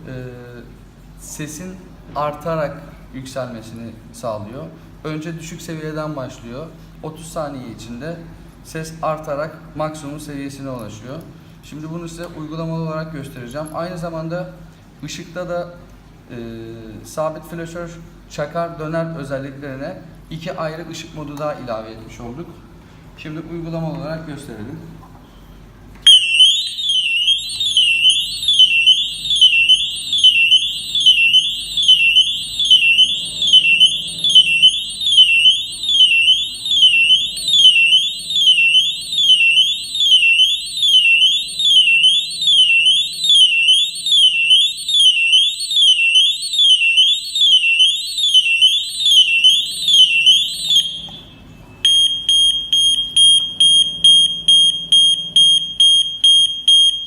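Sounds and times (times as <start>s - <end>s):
rapid high beeping tone: 26.1s - 51.1s
electronic siren wailing: 26.1s - 53.0s.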